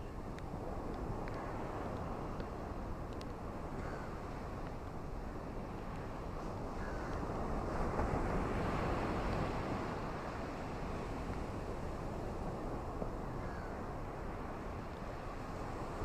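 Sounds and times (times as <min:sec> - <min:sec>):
ocean surf: 0:00.0 - 0:16.0.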